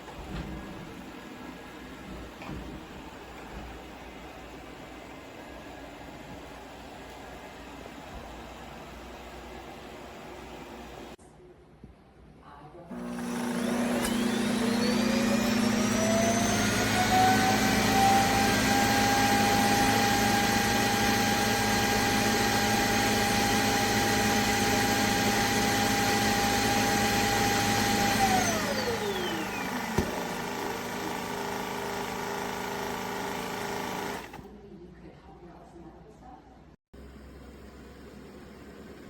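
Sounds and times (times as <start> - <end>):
vacuum suction motor whine: 12.9 - 34.5.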